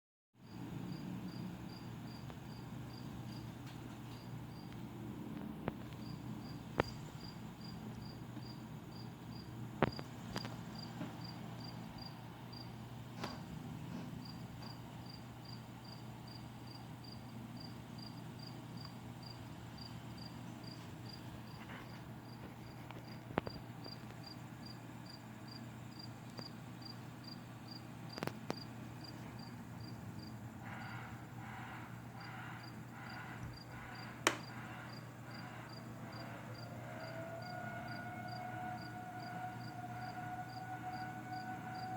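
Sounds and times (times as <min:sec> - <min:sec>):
cricket chirping: 0:00.4 - 0:03.5, 0:04.1 - 0:04.8, 0:05.7 - 0:12.7, 0:14.2 - 0:41.9
sharp clicks: 0:34.3 - 0:34.5.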